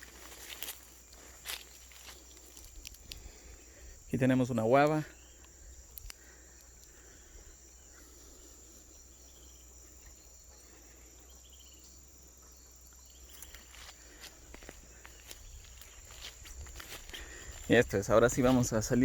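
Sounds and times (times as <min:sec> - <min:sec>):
high-pitched insect drone: 0:00.0 - 0:19.0
pulsed insect chirps: 0:00.0 - 0:19.0
light rustling ticks: 0:00.1 - 0:03.5, 0:04.8 - 0:07.2.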